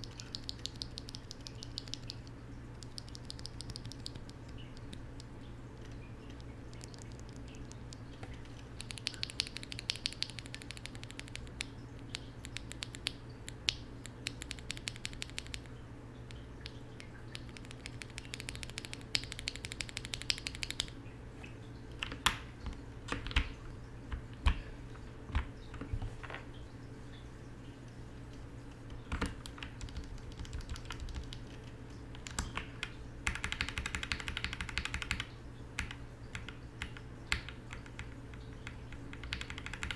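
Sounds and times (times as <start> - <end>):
mechanical keyboard switches clacking: 39.1 - 39.9.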